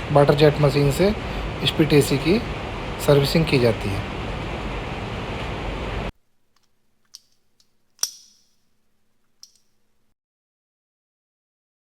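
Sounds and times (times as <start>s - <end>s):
water jet machine hissing: 0.0s - 6.1s.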